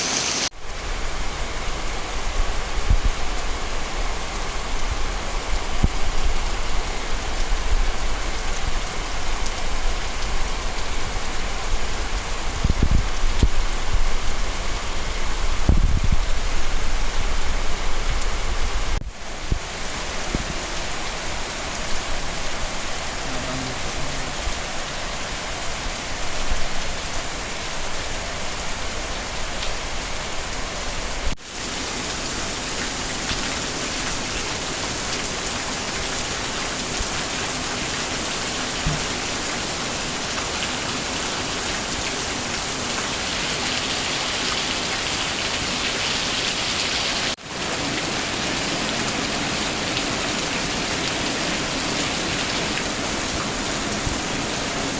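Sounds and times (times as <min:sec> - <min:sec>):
heavy rain falling: 0:00.0 - 0:54.9.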